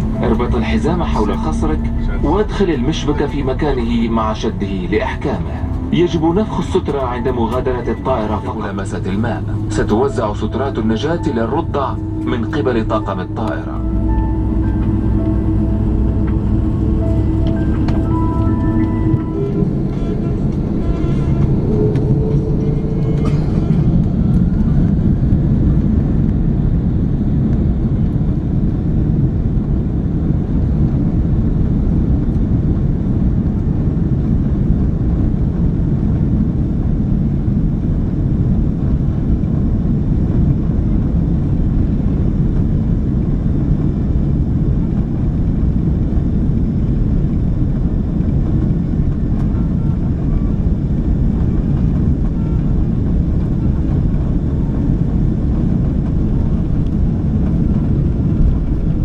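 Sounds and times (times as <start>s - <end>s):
jet engine cabin rumble: 0.0s - 59.0s.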